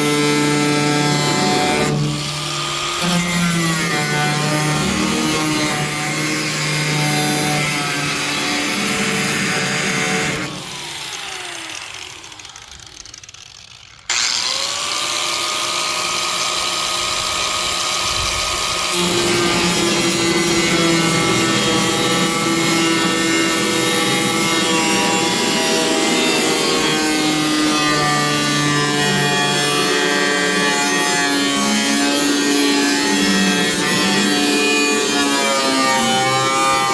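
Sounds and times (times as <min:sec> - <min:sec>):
power cutting tool whining: 0:00.0 - 0:36.9.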